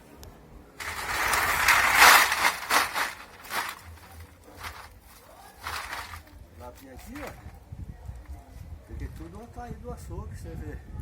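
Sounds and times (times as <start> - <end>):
aluminium cans clattering in a sack: 0.8 - 6.4, 7.0 - 7.5.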